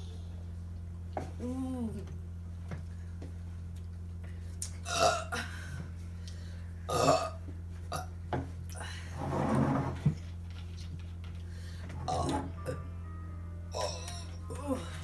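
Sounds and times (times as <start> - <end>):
person burping: 4.8 - 5.5, 6.9 - 8.1.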